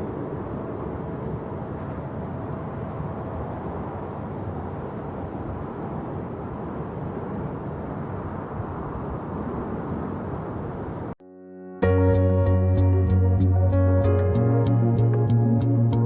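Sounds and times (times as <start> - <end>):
jet airliner engines rumbling: 0.0 - 11.2.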